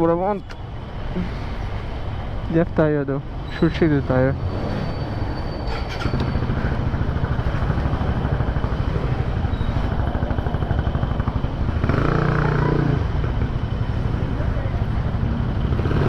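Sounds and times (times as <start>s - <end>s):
motorcycle engine running: 6.0s - 16.0s.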